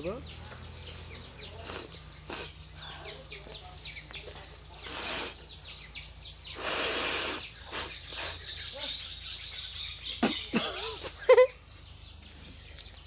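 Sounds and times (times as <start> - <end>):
birds chirping: 0.0 - 13.0
person blowing nose: 1.6 - 2.6, 4.9 - 5.4, 6.6 - 8.4.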